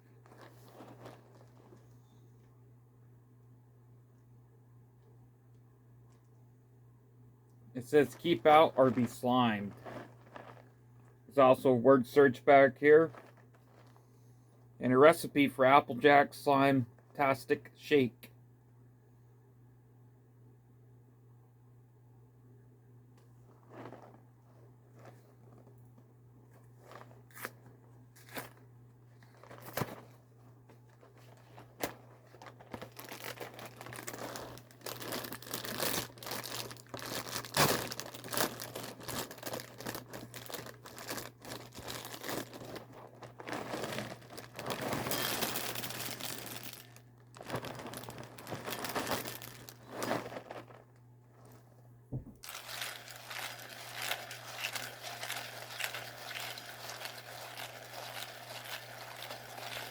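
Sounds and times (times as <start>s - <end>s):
plastic bag crinkling and tearing: 0.0s - 1.9s, 7.8s - 10.8s, 11.5s - 14.0s, 23.5s - 25.7s, 26.8s - 51.6s, 52.4s - 59.9s.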